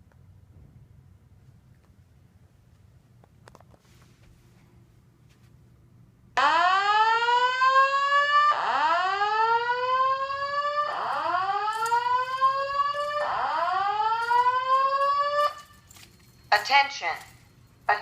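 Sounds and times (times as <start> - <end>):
fire alarm whoop tone: 6.4 - 16.4.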